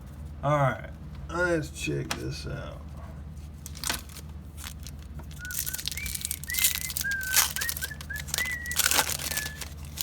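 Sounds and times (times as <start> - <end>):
foil pack rustling: 3.5 - 10.0
trading cards rustling and snapping: 3.6 - 10.0
person whistling a tune: 5.4 - 9.8.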